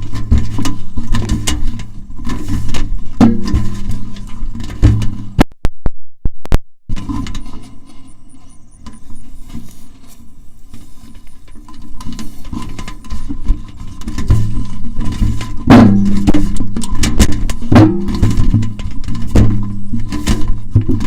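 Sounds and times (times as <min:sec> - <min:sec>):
low steady drone of kite line: 0:06.9 - 0:21.0.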